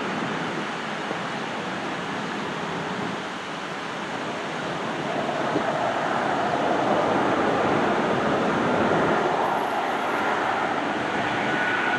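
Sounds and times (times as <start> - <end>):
jet engines rushing: 4.0 - 11.9.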